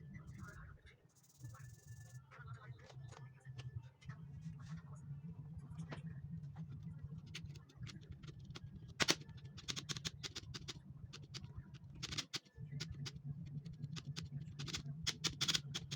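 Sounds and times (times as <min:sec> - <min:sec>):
steady low hum: 0:00.0 - 0:15.9
keyboard keys clicking and rattling: 0:06.7 - 0:15.9.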